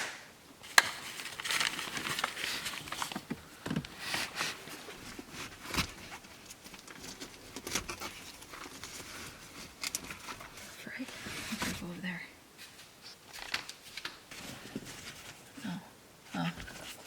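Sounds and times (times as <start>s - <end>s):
rustling: 0.0s - 17.0s.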